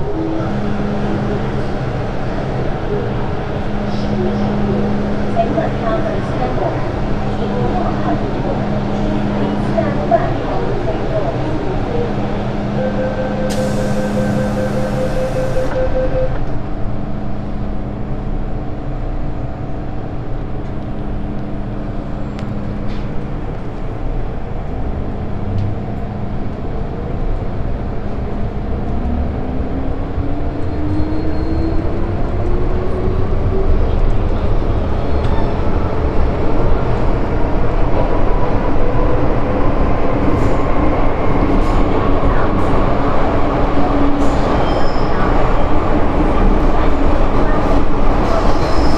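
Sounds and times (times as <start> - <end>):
train rumble: 0.0 - 48.9
beeping tone: 12.7 - 16.5.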